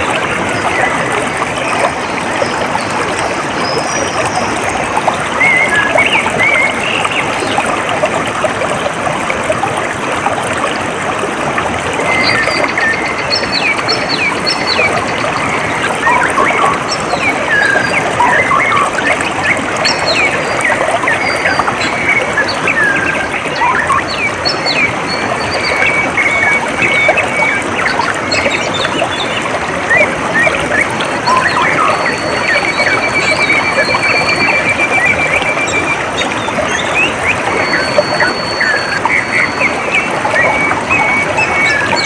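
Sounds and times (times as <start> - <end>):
water trickling: 0.0 - 42.0
birds chirping and trilling: 12.1 - 42.0.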